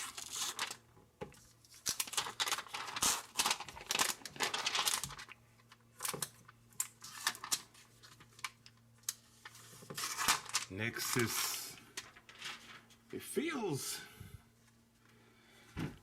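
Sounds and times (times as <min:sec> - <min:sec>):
plastic film crinkling: 0:00.0 - 0:00.8, 0:01.4 - 0:13.1.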